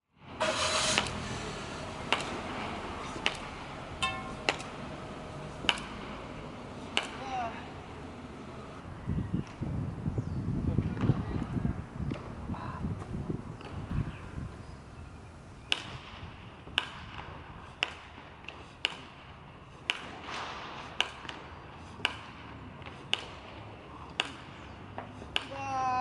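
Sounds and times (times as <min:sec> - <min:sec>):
baseball bat striking balls: 0:02.0 - 0:08.2, 0:15.6 - 0:25.8.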